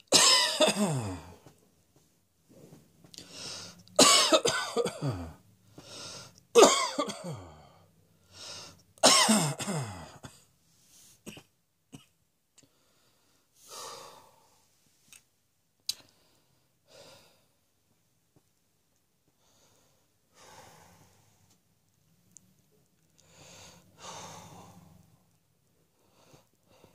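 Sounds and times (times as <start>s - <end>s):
person coughing hard: 0.1s - 1.4s, 4.0s - 5.4s, 6.6s - 7.6s, 9.0s - 10.4s
breathing: 3.2s - 3.8s, 5.6s - 6.4s, 7.6s - 8.8s, 12.6s - 14.7s, 16.0s - 17.6s, 19.3s - 21.5s, 23.2s - 25.2s, 25.9s - 26.9s
small mouth clicks: 15.1s - 16.1s.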